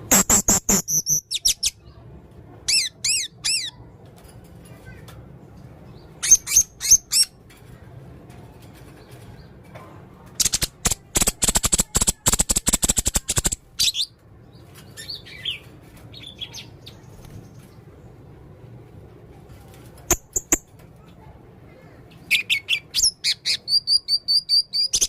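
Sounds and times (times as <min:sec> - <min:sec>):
parrot chirping: 0:00.0 - 0:01.8, 0:06.2 - 0:07.3, 0:10.4 - 0:14.1, 0:22.3 - 0:25.0.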